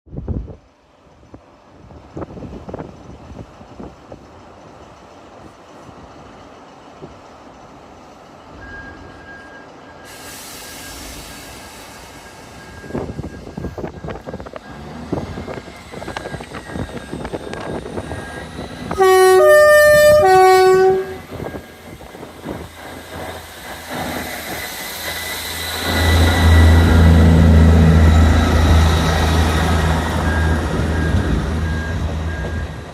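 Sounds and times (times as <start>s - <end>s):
train horn three tones: 18.9s - 21.6s
diesel engine drone: 22.8s - 32.9s.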